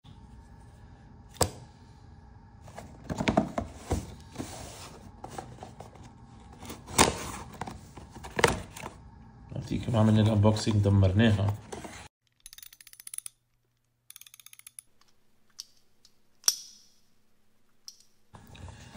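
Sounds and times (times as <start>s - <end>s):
rustling scrape: 3.6s - 8.4s, 11.2s - 12.1s.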